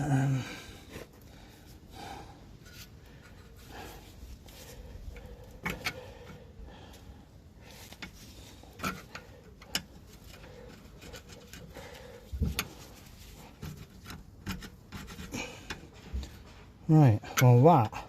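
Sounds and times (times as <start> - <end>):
metal tools clicking and knocking: 5.2 - 6.4.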